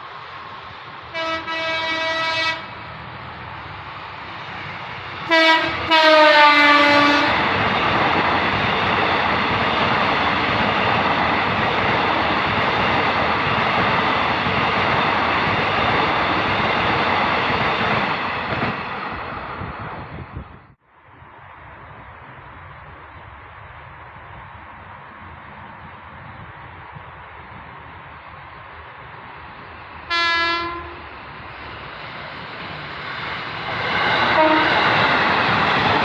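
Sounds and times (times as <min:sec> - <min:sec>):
train wheels rumbling on rails: 0:00.0 - 0:36.0
electric train horn: 0:01.1 - 0:02.8, 0:05.3 - 0:07.4, 0:30.1 - 0:31.1, 0:34.3 - 0:35.0.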